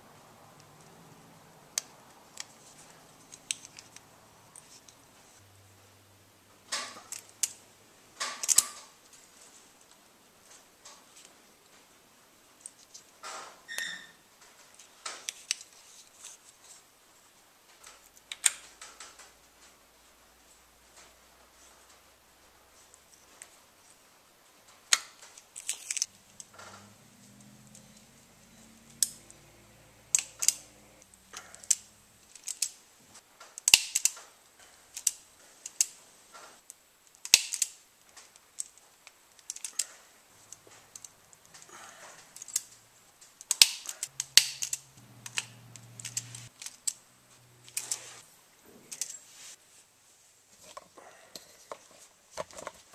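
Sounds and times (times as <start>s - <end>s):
tools and connectors clicking: 1.8s - 5.0s, 6.7s - 7.6s, 8.2s - 9.0s, 12.6s - 16.4s, 17.8s - 19.7s, 24.8s - 32.8s, 33.4s - 47.0s, 47.6s - 48.0s, 48.7s - 49.2s
low hum: 26.1s - 32.4s.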